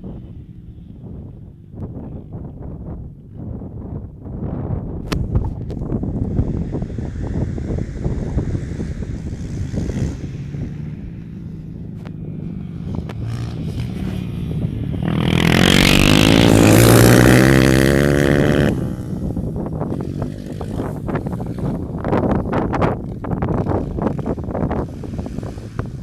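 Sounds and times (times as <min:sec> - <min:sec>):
wind buffeting microphone: 0:00.0 - 0:26.0
motorcycle engine passing: 0:05.8 - 0:26.0.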